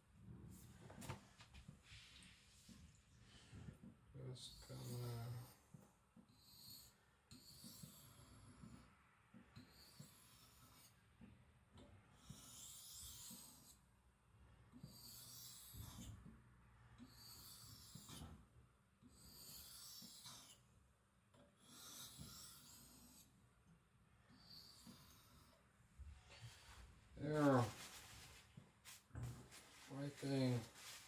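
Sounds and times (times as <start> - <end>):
knife strokes on whetstone: 19.2 - 20.6, 21.7 - 23.3, 27.5 - 31.0.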